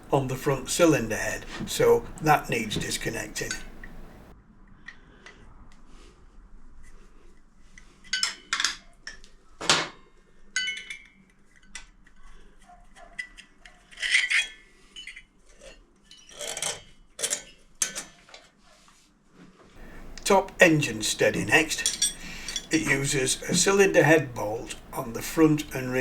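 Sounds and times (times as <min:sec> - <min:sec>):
metal tools clinking: 0:00.6 - 0:04.2, 0:10.6 - 0:11.2, 0:14.0 - 0:18.1, 0:19.8 - 0:26.0.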